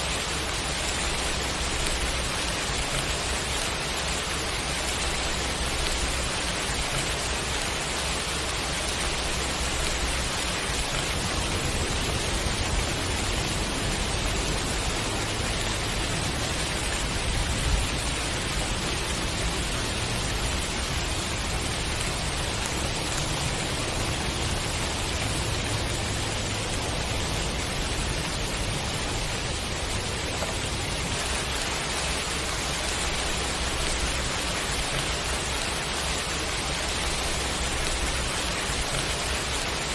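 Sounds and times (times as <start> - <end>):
rain hissing: 0.0 - 39.9.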